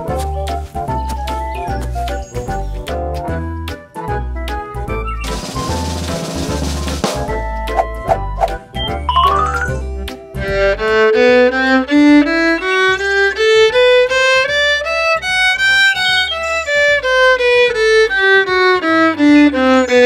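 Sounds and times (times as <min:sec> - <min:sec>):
melody of short notes: 0:07.6 - 0:10.0.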